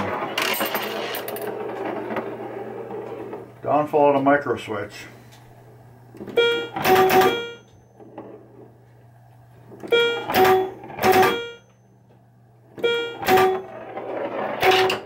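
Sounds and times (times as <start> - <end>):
pinball machine clunks: 0.0 - 3.5, 6.2 - 8.6, 9.7 - 15.0
ringing scoring tones: 6.4 - 8.0, 9.9 - 12.2.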